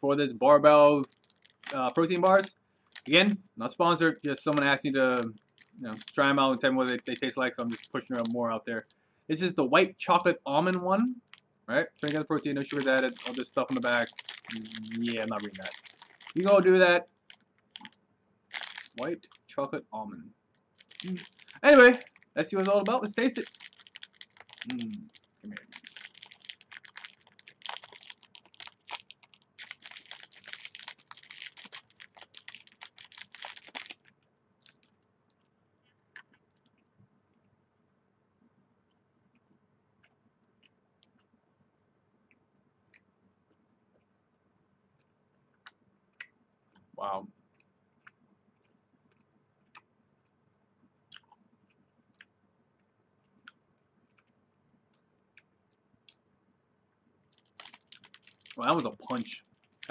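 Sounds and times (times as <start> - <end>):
wrapper crinkling: 0.7 - 9.0, 10.6 - 11.4, 12.0 - 19.5, 20.7 - 35.0, 57.3 - 59.9
chewing protein bar: 1.0 - 3.4, 4.4 - 6.3, 12.0 - 16.6, 17.3 - 19.5, 20.8 - 35.0, 51.1 - 56.2, 57.3 - 59.9
mouth clicks: 21.0 - 22.0, 24.6 - 25.9.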